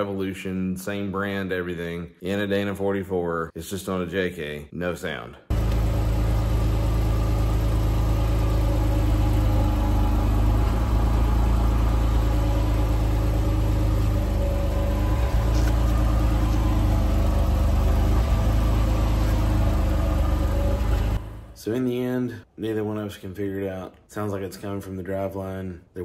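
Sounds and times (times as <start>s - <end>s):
car engine running: 5.5s - 21.6s.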